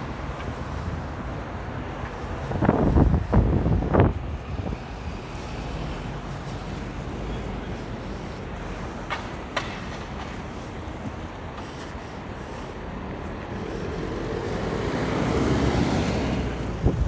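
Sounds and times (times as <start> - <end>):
traffic going by: 0.0 - 17.0
wind on microphone: 2.1 - 7.2, 13.4 - 17.0.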